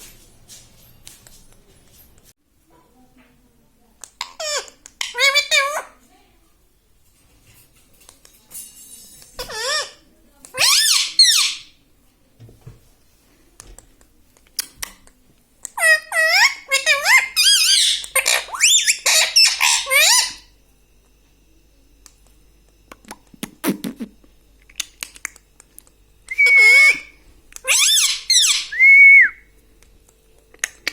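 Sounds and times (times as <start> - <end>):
parrot shrill squeaky calls: 4.4 - 5.9, 9.4 - 10.0, 10.6 - 11.7, 15.8 - 20.5, 26.3 - 28.9.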